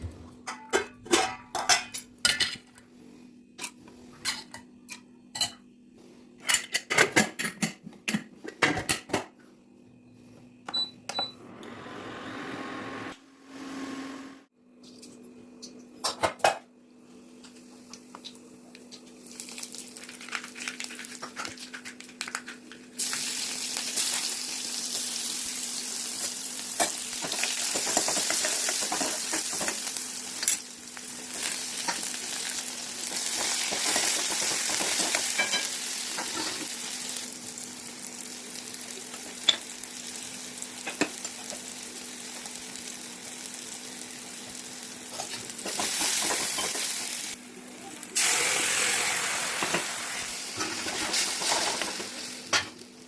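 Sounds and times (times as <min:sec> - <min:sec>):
food sizzling in hot oil: 0:23.0 - 0:47.4, 0:48.1 - 0:53.0.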